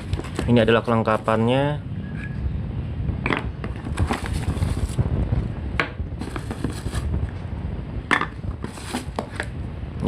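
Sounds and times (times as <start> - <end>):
plastic parts rustling and knocking: 0.0 - 1.3, 3.2 - 5.0, 6.2 - 7.1
steady low rumble: 0.0 - 10.0.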